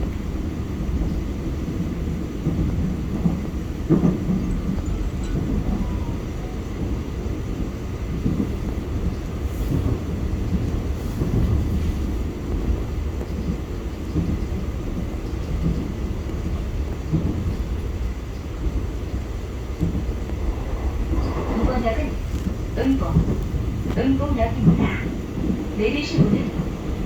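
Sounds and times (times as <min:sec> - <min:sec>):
subway train rumbling on track: 0:00.0 - 0:27.0.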